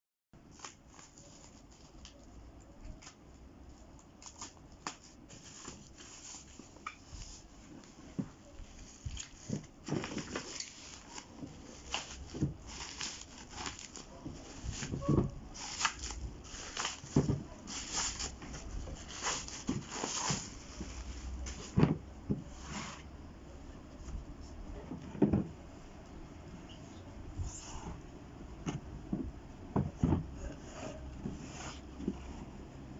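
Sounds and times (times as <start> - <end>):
rustling: 3.0 - 23.0.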